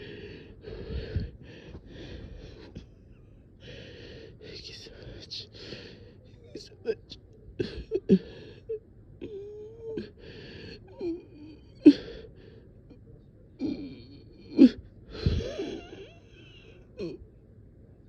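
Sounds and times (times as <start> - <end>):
person breathing wheezily: 15.1 - 15.9
person gasping: 15.2 - 15.9.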